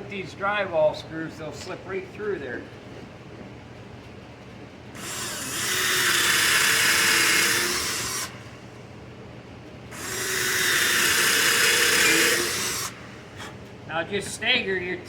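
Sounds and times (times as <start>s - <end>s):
power drill boring through plywood: 5.0s - 8.6s, 9.9s - 13.5s.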